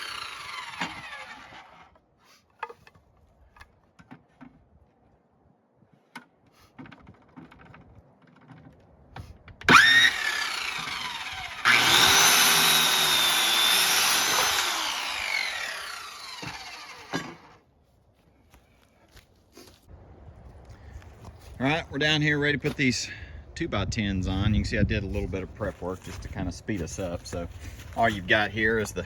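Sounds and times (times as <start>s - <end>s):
circular saw cutting wood: 0.0s - 2.8s, 9.7s - 17.6s.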